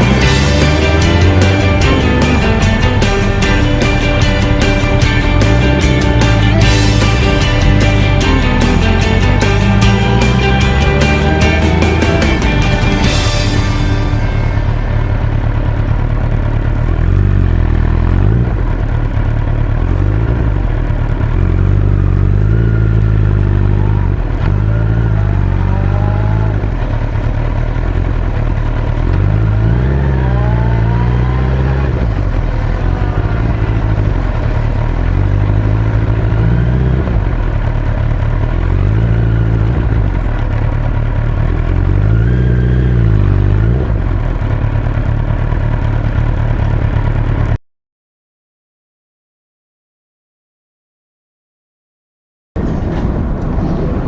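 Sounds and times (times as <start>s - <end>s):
motorcycle engine accelerating: 0.0s - 47.6s
steady rushing noise: 52.6s - 54.0s.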